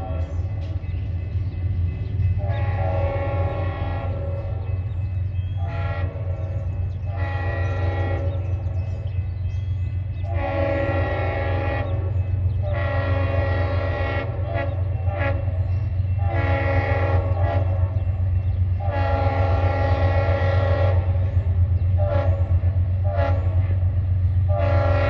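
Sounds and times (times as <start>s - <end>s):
locomotive air horn: 2.4s - 4.8s, 5.6s - 8.7s, 10.2s - 21.3s, 21.9s - 25.0s.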